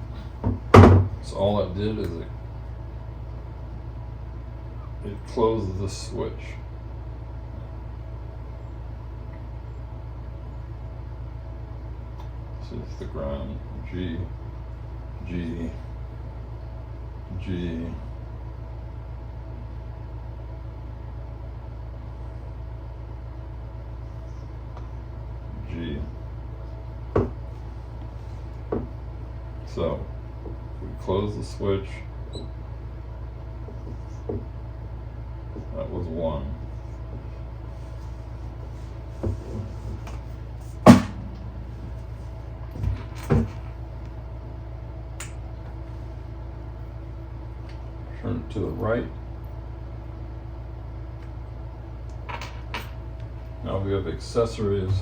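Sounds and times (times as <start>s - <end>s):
low mechanical hum: 0.0s - 55.0s
sharp bang: 40.8s - 42.0s.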